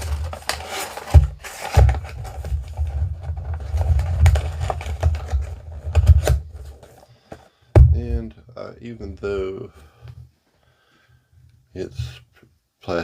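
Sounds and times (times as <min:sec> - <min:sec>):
box thumps: 0:04.0 - 0:08.3.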